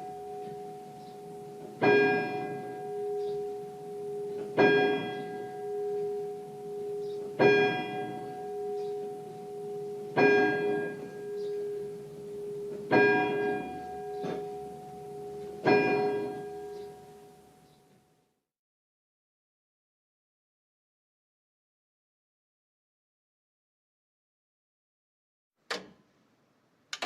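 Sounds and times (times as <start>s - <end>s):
bell tolling: 0.0s - 17.3s.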